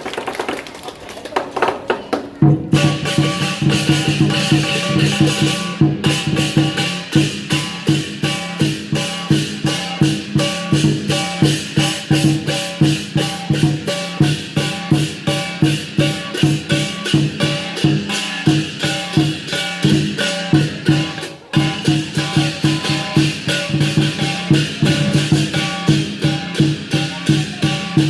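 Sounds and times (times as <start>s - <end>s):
drum cymbals and gong percussion: 2.3s - 28.0s.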